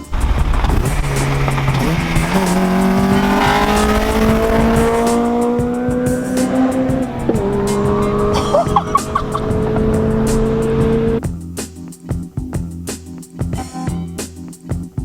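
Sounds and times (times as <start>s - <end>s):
car engine accelerating: 0.0s - 11.2s.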